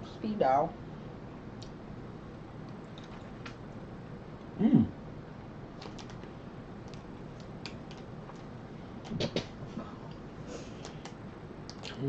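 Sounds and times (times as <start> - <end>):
person humming mmm: 4.6 - 4.9
person murmuring: 4.6 - 4.9.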